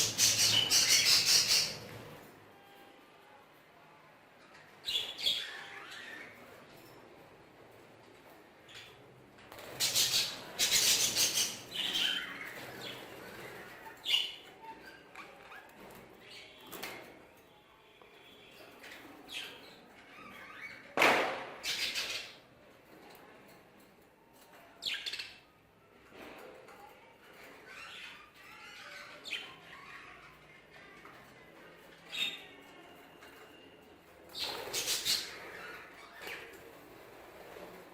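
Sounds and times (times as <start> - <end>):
budgerigars chirping and chattering: 0.0 - 1.8, 9.8 - 13.1.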